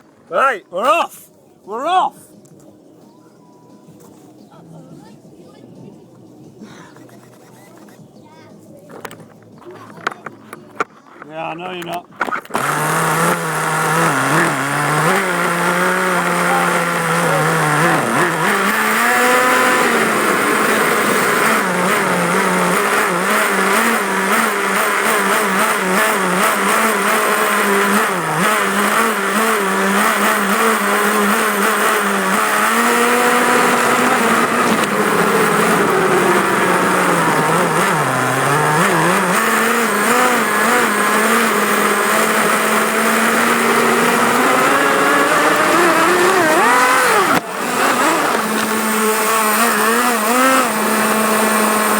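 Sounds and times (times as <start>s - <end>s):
toy car motor whine: 12.3s - 51.9s.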